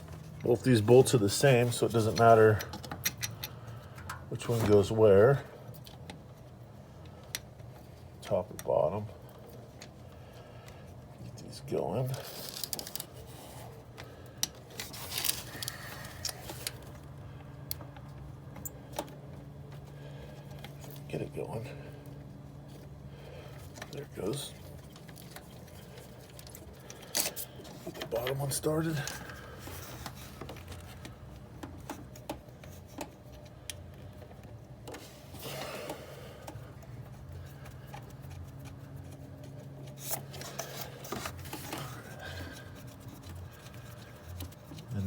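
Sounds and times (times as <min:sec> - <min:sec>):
light metallic clicks and scrapes: 0:01.6 - 0:05.1.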